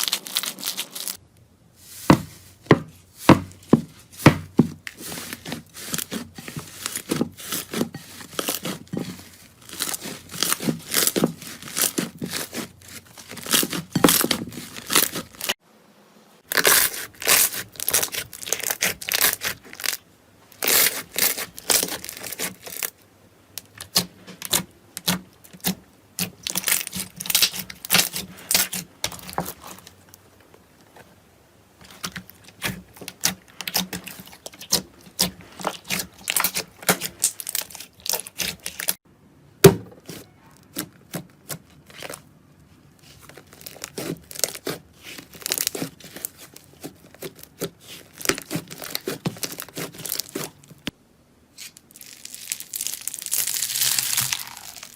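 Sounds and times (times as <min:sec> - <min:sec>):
slime crackling and popping: 0:04.8 - 0:15.6, 0:16.5 - 0:20.0, 0:20.6 - 0:23.0, 0:23.6 - 0:29.9, 0:31.8 - 0:39.0, 0:43.0 - 0:50.6, 0:51.6 - 0:54.9.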